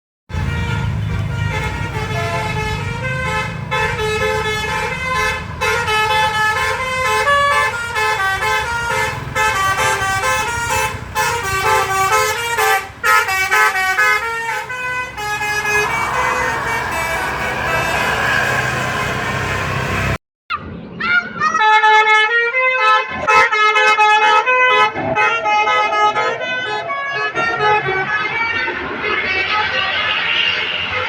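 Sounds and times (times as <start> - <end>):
bus engine running: 0.3 - 20.2
bus horn playing a melody: 0.3 - 20.2, 21.6 - 31.0
rushing noise: 15.0 - 20.2.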